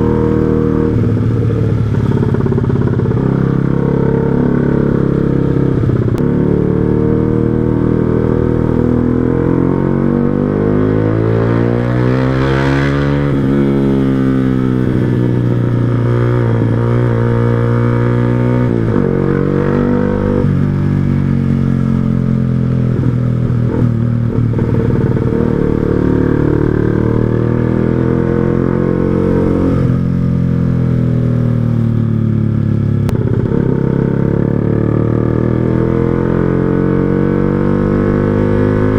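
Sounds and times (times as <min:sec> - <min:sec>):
motorcycle engine revving while riding: 0:00.0 - 0:38.9.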